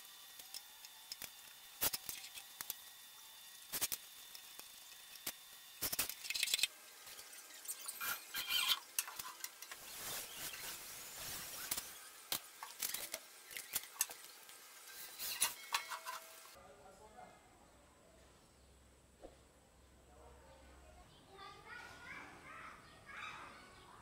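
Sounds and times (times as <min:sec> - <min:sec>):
metal parts clinking and scraping: 0:03.7 - 0:16.5.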